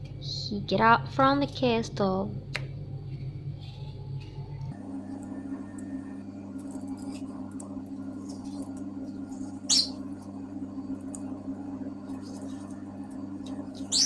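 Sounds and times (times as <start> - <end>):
steady low hum: 0.0 - 14.0
bird chirping: 9.7 - 10.0, 13.8 - 14.0
loud sharp bird call: 9.7 - 10.0.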